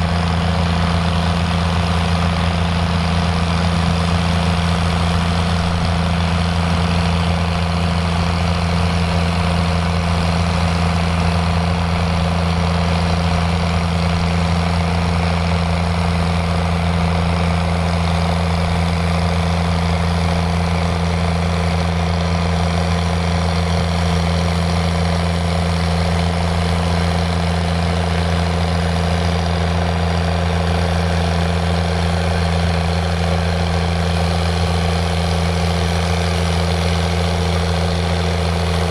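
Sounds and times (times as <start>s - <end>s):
tractor diesel engine droning: 0.0s - 38.9s.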